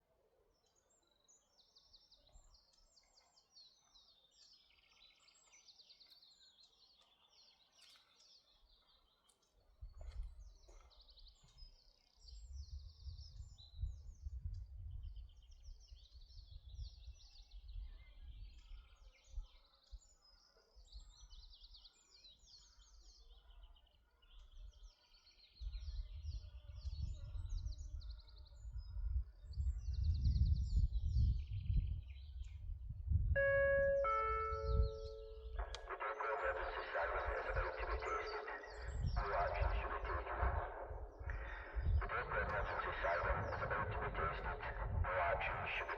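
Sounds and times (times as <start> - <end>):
birds trilling: 33.4 - 45.9.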